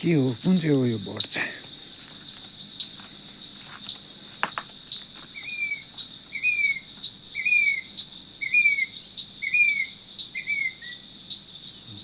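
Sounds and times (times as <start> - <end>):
bird calling: 4.9 - 11.0.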